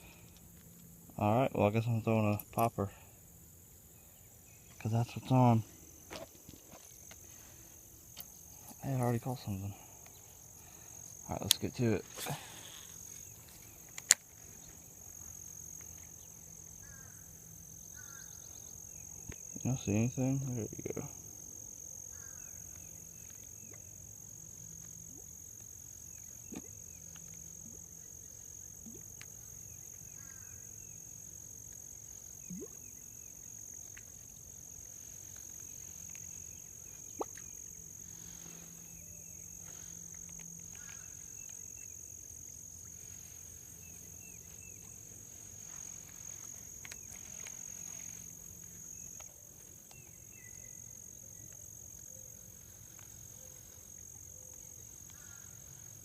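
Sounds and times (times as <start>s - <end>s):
high-pitched insect chorus trilling: 0.0s - 56.0s.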